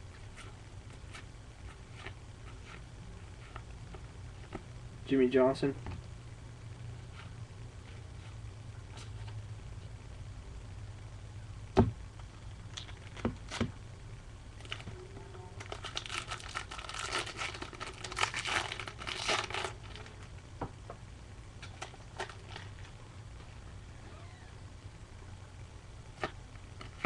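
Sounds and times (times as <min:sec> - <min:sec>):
steady low hum: 0:00.0 - 0:27.0
wrapper crinkling and tearing: 0:14.6 - 0:14.9, 0:15.6 - 0:20.3, 0:21.6 - 0:22.9.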